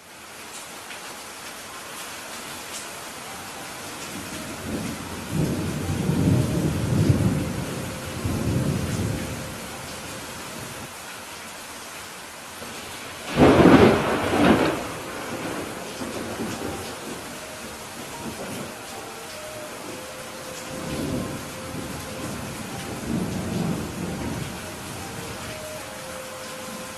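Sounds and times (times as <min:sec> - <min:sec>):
heavy rain falling: 0:00.0 - 0:26.9
rolling thunder rumble: 0:04.2 - 0:10.8, 0:12.8 - 0:18.9, 0:19.8 - 0:25.6
sharp thunderclap: 0:13.3 - 0:17.0.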